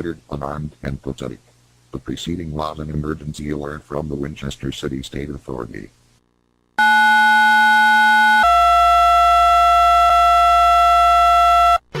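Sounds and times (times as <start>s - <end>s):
buzzy emergency alert tone: 6.8s - 12.0s.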